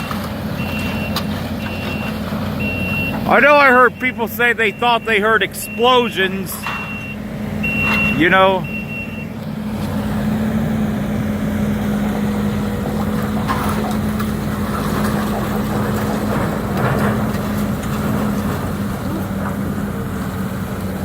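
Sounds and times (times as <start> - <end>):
debris rattling and crunching: 0.0 - 8.8, 9.6 - 21.0
excavator diesel engine running: 0.0 - 21.0.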